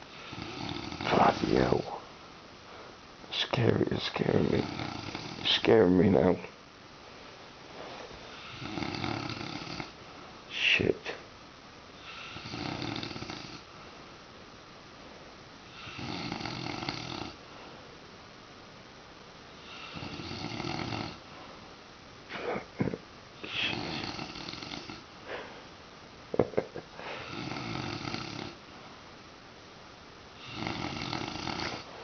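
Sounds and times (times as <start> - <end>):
man snoring loudly: 0.1 - 2.0, 4.3 - 5.6, 8.4 - 10.0, 12.0 - 13.7, 15.7 - 17.4, 19.6 - 21.2, 23.4 - 25.1, 27.2 - 28.6, 30.4 - 31.9.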